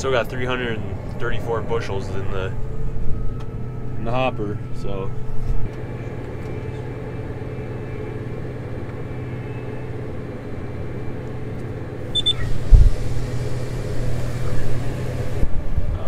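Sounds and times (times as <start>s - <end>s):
combine harvester droning: 0.0s - 16.0s
short high beeps: 12.1s - 12.5s.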